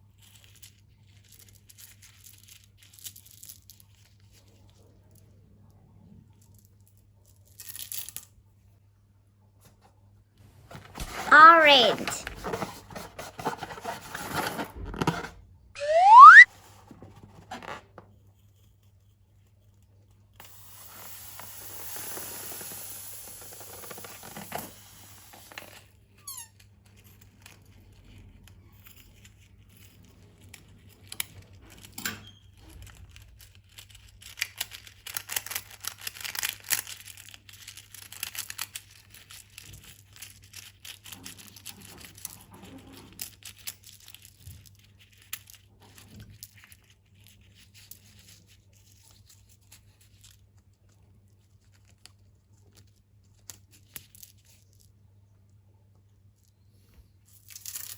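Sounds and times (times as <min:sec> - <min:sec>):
slime hissing: 0:15.8 - 0:16.4.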